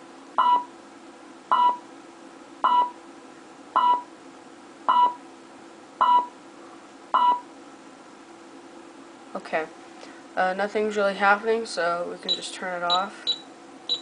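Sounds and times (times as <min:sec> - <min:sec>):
faint steady hum: 0:00.0 - 0:14.0
alarm keypad beeps: 0:00.4 - 0:00.7, 0:01.5 - 0:01.8, 0:02.7 - 0:03.0, 0:03.8 - 0:04.0, 0:04.9 - 0:05.2, 0:06.0 - 0:06.3, 0:07.2 - 0:07.4, 0:12.3 - 0:14.0.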